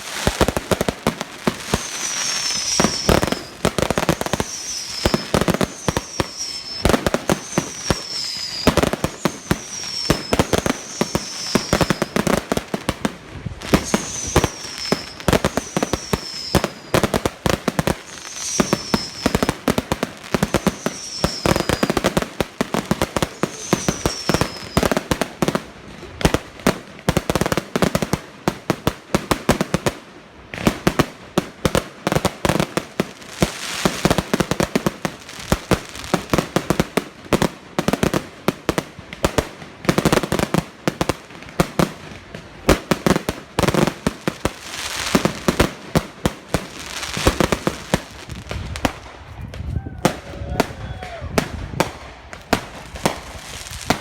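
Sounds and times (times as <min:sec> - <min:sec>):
fireworks bangs and crackling: 0:00.0 - 0:54.0
falling firework whistle: 0:01.5 - 0:12.7, 0:13.6 - 0:25.3, 0:46.8 - 0:52.1.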